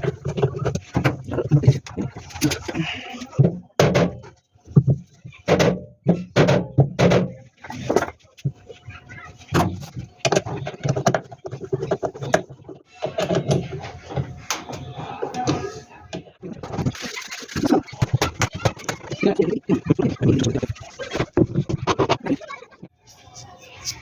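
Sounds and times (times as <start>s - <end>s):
tools and metal parts clattering: 9.5s - 22.2s.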